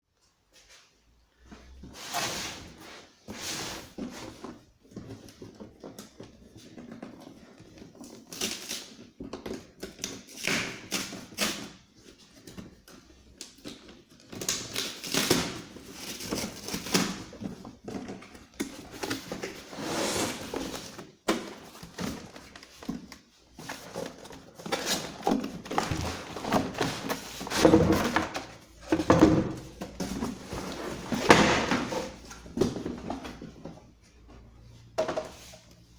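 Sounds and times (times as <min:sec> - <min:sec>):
cardboard box rustling and scraping: 0:15.7 - 0:33.7.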